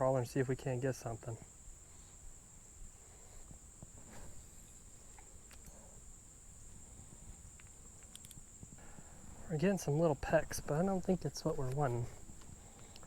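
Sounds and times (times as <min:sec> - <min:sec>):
crickets trilling: 0:00.0 - 0:13.0
faint clicks and rustles: 0:03.0 - 0:09.5, 0:11.4 - 0:13.0.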